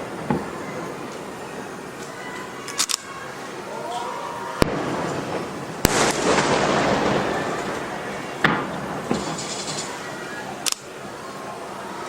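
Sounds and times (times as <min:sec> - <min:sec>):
firework shell bangs: 0:00.0 - 0:01.4, 0:04.6 - 0:11.0
fireworks crackling hiss: 0:00.0 - 0:12.0.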